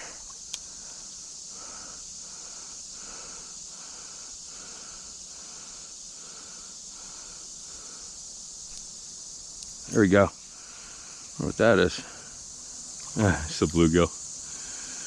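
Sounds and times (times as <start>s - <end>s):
faint regular pulsing sound: 0.0s - 15.0s.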